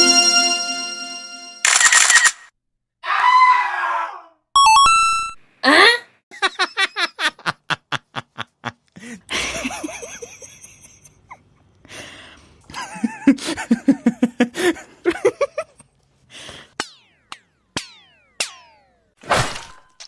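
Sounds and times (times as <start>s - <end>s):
rhythmic ha-ha laugh: 6.3s - 11.6s, 12.7s - 15.9s
breathy burst of laughter: 12.7s - 15.8s.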